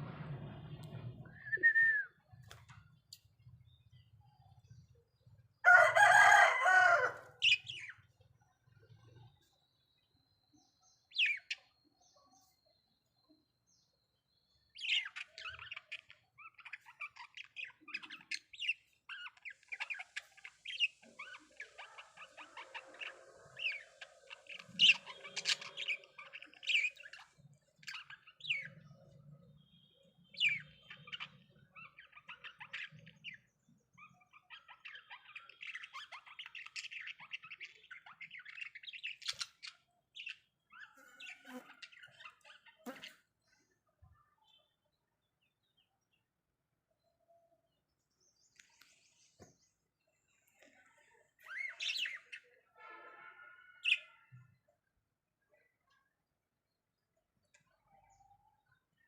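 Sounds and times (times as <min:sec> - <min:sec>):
budgerigars chirping: 0:14.8 - 0:28.8, 0:29.8 - 0:33.3.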